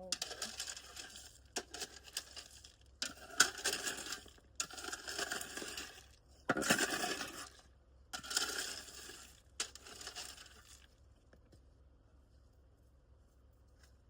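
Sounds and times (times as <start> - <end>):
loose stones rattling and crunching: 0.0 - 11.0.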